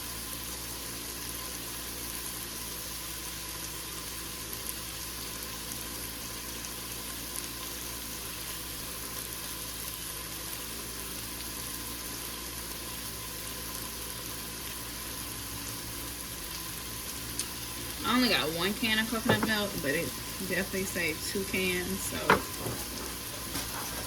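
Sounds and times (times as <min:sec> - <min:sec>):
food sizzling in a pan: 0:00.0 - 0:24.0
faint constant hum: 0:15.6 - 0:24.0.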